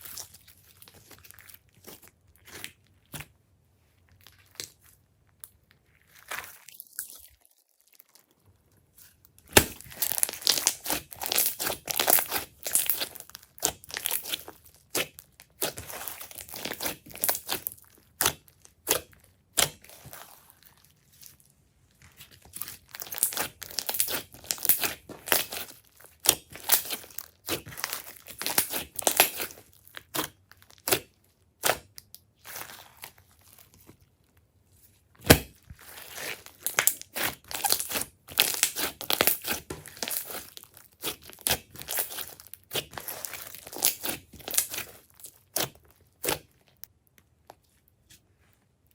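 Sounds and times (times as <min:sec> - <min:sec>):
slime squished by hand: 0:08.9 - 0:33.9, 0:35.2 - 0:47.6.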